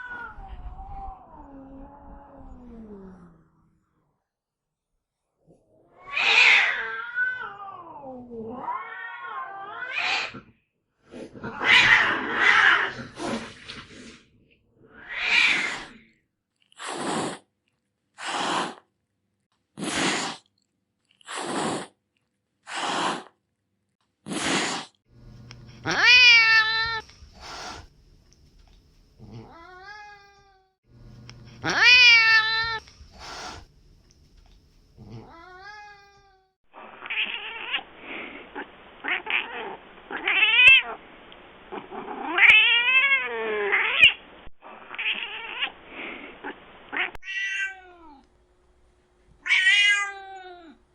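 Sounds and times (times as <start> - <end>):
cat growling: 0.0 - 3.9, 5.4 - 13.6, 29.2 - 30.2, 35.0 - 36.0, 41.7 - 44.0
cat yowling: 5.9 - 10.4, 11.4 - 13.0, 25.8 - 27.0, 29.4 - 30.7, 31.6 - 32.8, 42.2 - 44.2, 47.0 - 48.2, 49.4 - 50.8
cat hissing: 8.6 - 10.5, 14.9 - 16.1, 16.7 - 17.5, 18.2 - 18.9, 19.8 - 20.5, 21.2 - 22.0, 22.6 - 23.4, 24.2 - 25.0, 25.8 - 27.9, 31.6 - 33.7.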